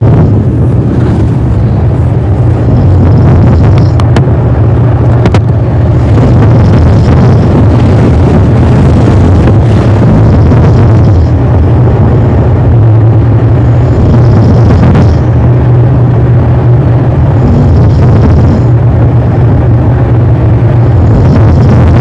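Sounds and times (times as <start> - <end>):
distorted man snoring: 2.6 - 4.0, 6.0 - 11.4, 13.8 - 15.3, 17.3 - 18.7, 20.9 - 22.0.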